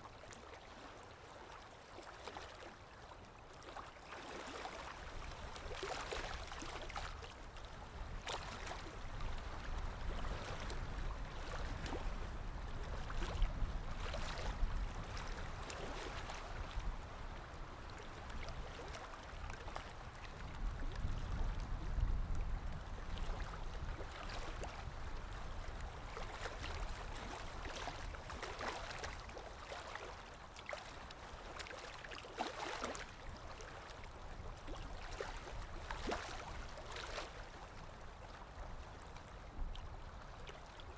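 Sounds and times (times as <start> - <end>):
small splashes and gurgles: 3.5 - 12.2, 23.2 - 38.4.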